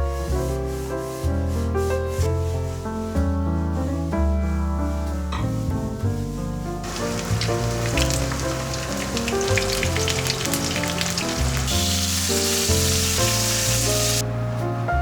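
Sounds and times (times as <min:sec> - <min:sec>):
background music: 0:00.0 - 0:15.0
food sizzling in a pan: 0:06.8 - 0:14.2.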